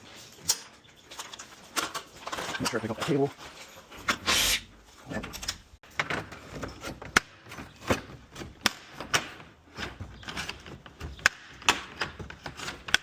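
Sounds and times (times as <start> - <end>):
sharp metal clicks and knocks: 5.2 - 13.0.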